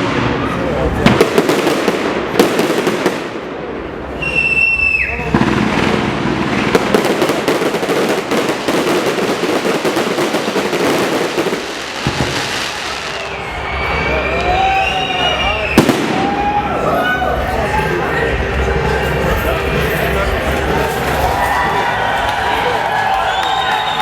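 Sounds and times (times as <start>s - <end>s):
fireworks crackling and banging: 0.0s - 24.0s
firework whistle: 4.0s - 5.9s, 10.4s - 16.6s, 23.1s - 24.0s.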